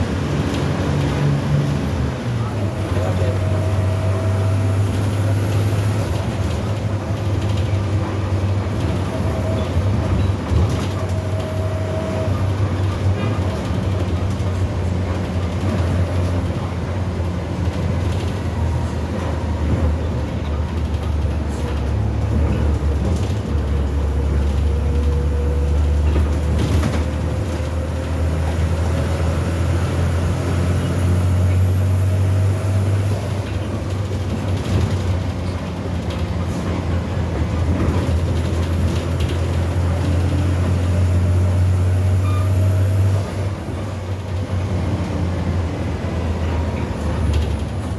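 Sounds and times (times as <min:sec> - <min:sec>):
bus engine droning: 0:00.0 - 0:47.9.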